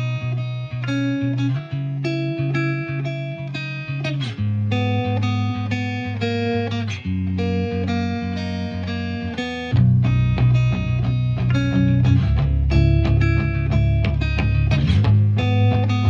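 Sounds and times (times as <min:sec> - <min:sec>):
plucked guitar melody: 0:00.0 - 0:16.0
low bass line: 0:08.7 - 0:16.0.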